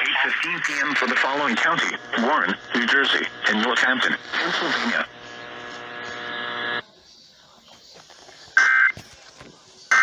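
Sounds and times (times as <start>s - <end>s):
harsh buzzy electronic tone: 0.0s - 6.8s.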